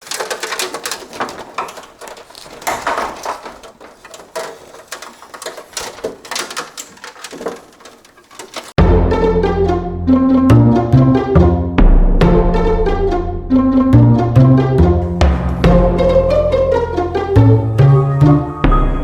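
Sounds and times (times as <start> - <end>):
hard objects clicking and rattling: 0.0 - 8.8.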